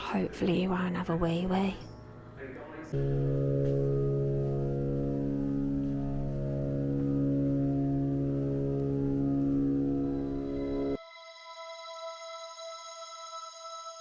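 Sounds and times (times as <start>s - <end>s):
sustained organ chord: 1.9s - 12.0s.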